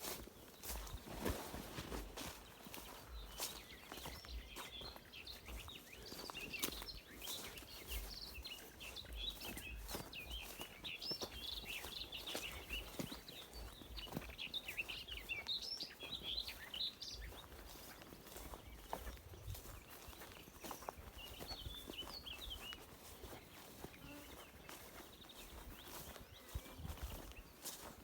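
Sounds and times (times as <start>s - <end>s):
footsteps on forest floor: 0.0s - 28.0s
songbirds chirping: 0.0s - 28.0s
wind rumble on microphone: 19.0s - 20.3s.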